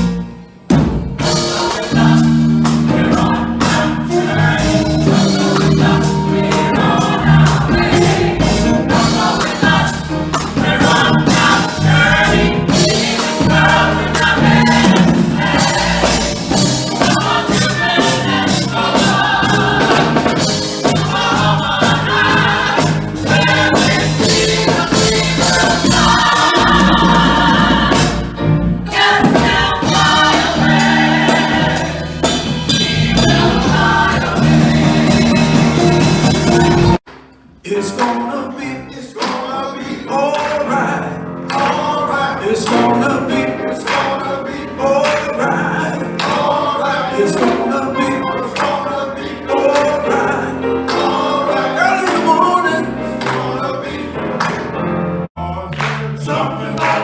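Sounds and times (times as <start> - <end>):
live band playing: 0.0 - 37.2
gospel choir singing: 1.0 - 57.0.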